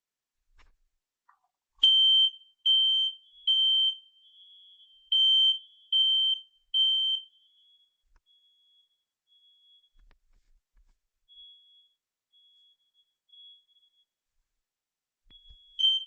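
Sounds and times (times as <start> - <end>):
smoke detector beeping: 15.3 - 16.0.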